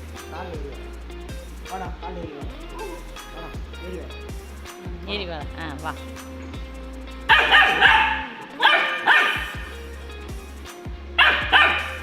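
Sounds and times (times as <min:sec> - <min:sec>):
background music: 0:00.0 - 0:12.0
puppy barking high barks: 0:07.3 - 0:09.8, 0:11.2 - 0:12.0.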